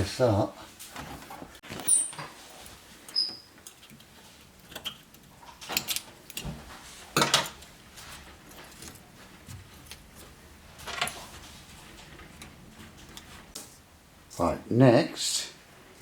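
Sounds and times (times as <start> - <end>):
objects knocking and clattering: 4.6 - 7.7, 8.7 - 13.6.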